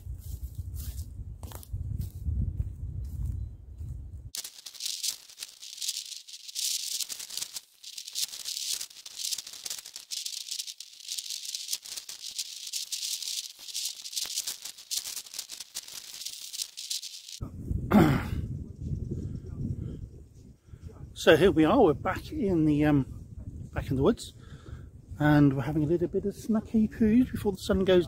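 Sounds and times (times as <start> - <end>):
high rustling hiss: 4.4 - 17.4.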